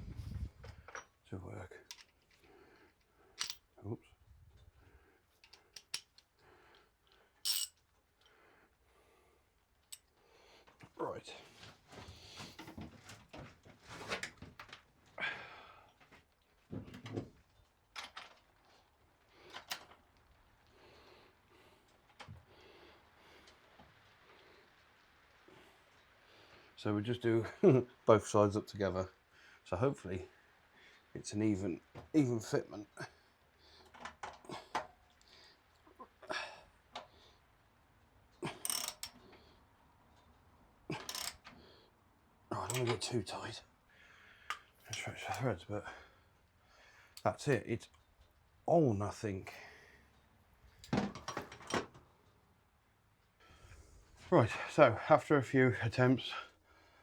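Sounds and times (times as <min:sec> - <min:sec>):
socket wrench rasping: 0:38.5 - 0:39.2, 0:40.9 - 0:41.4
hand tool clicks: 0:38.6 - 0:39.2, 0:41.0 - 0:41.4.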